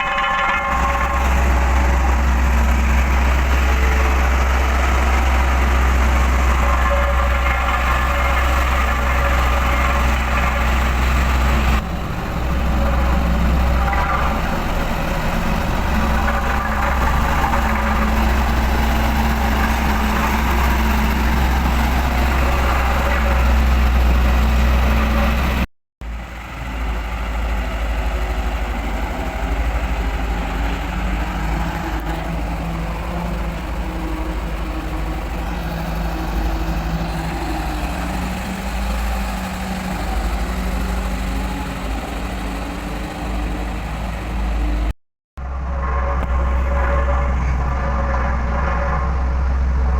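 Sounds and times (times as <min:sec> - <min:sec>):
vibrating drum hum: 0:00.0 - 0:25.6
diesel engine running: 0:00.0 - 0:49.9.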